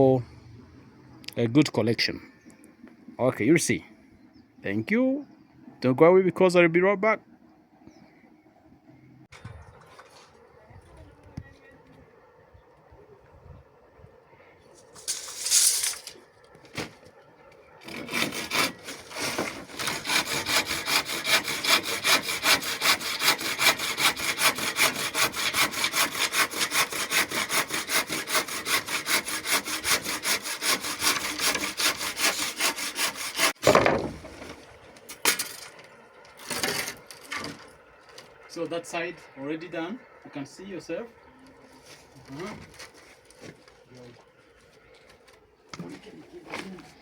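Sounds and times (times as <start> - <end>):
hand saw cutting timber: 14.9 - 16.2, 17.8 - 33.8.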